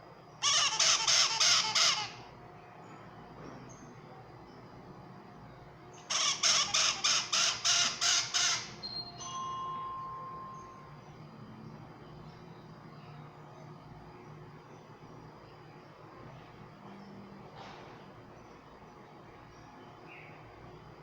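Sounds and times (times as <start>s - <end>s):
parrot squawking harshly: 0.4s - 2.2s, 6.1s - 8.8s.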